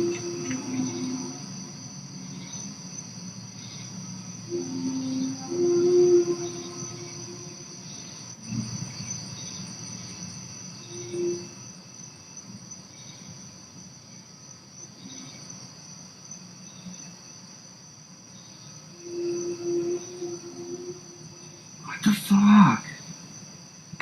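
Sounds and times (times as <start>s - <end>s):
low steady tone: 0.0s - 2.8s, 3.6s - 8.9s, 18.8s - 22.3s
crickets trilling: 0.0s - 24.0s.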